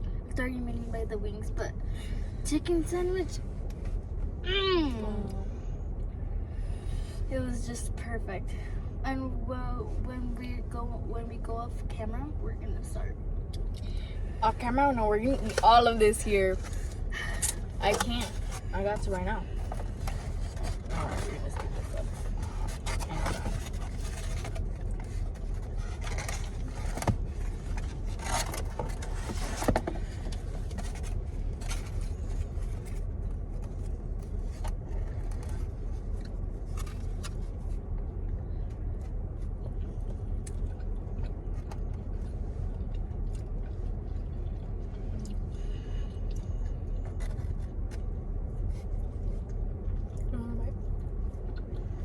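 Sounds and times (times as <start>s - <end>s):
low car cabin rumble: 0.0s - 52.0s
food packaging rustling: 19.6s - 33.0s.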